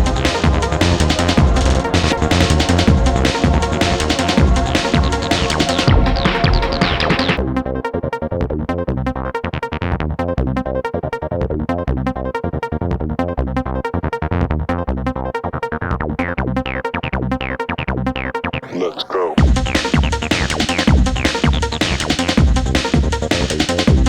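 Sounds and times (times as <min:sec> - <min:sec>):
electronic dance music: 0:00.0 - 0:07.4, 0:18.6 - 0:24.0
synthesizer bass: 0:00.0 - 0:24.0.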